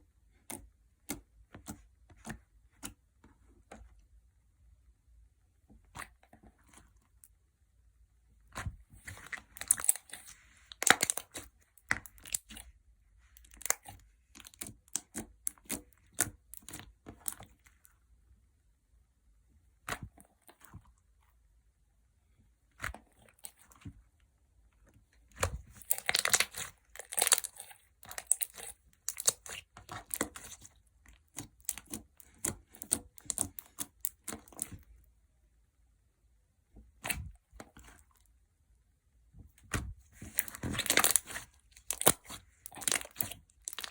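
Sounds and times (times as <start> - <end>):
slime squelching and popping: 8.4 - 17.8, 25.2 - 35.0, 36.8 - 38.1, 39.5 - 43.9.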